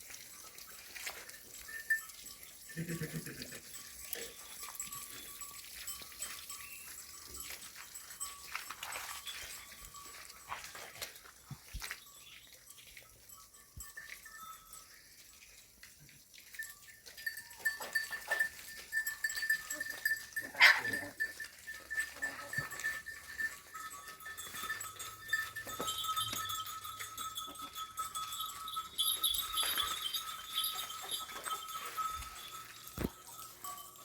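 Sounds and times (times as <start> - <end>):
livestock bleating: 2.7 - 3.7.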